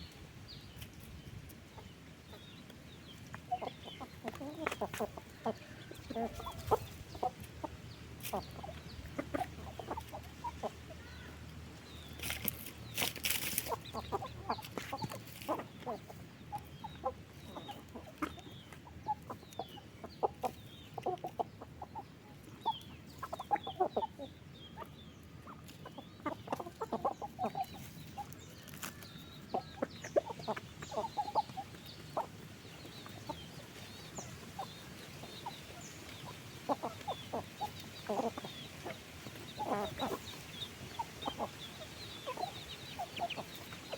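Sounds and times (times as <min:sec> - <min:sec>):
chickens clucking: 0:00.0 - 0:43.9.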